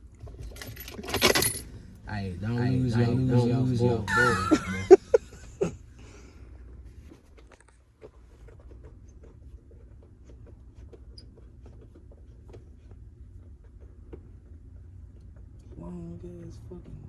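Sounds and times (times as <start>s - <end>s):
low hum: 0.0s - 6.9s.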